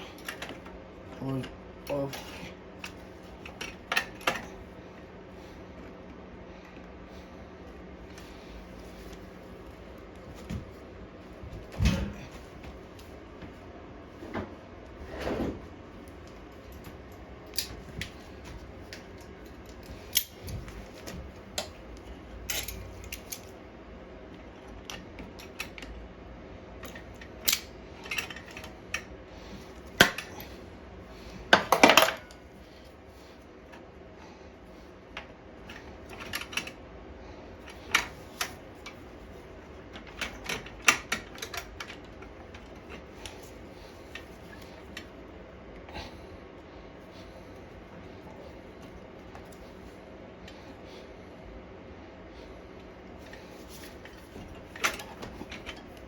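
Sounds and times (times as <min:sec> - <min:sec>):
metal parts clattering: 0:31.6 - 0:32.4.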